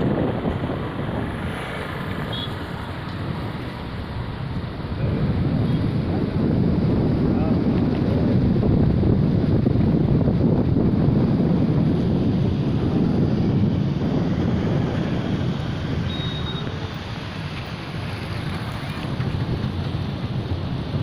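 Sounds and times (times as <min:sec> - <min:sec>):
wind buffeting microphone: 0:00.0 - 0:21.0
floodwater rushing: 0:14.0 - 0:21.0.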